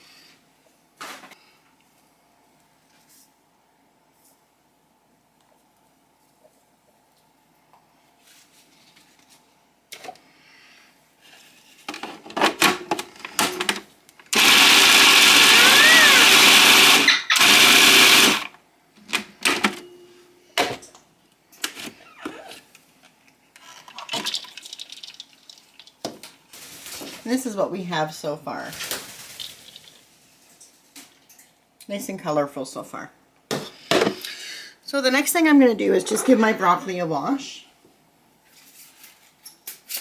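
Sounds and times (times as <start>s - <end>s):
food processor motor running: 14.3s - 18.6s.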